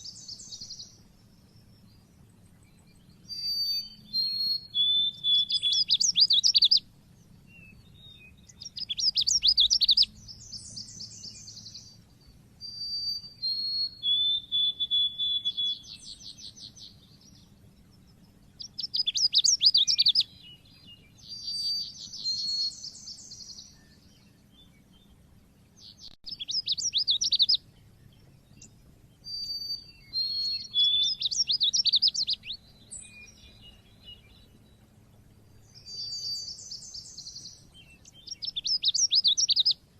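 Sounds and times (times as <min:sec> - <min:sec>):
bird chirping high phrases: 0:03.3 - 0:06.8, 0:08.5 - 0:12.0, 0:12.6 - 0:17.4, 0:18.6 - 0:23.9, 0:25.8 - 0:27.6, 0:28.6 - 0:34.5, 0:35.6 - 0:39.8.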